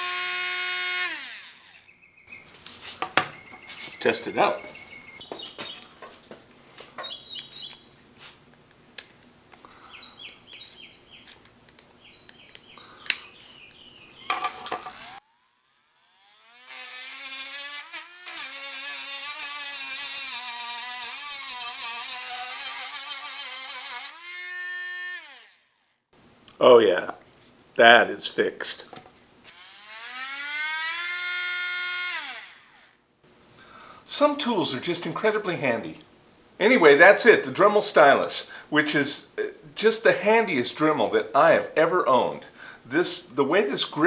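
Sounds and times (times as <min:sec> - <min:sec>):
rotary tool whining: 0:00.0 - 0:08.4, 0:10.1 - 0:25.8, 0:29.4 - 0:33.0.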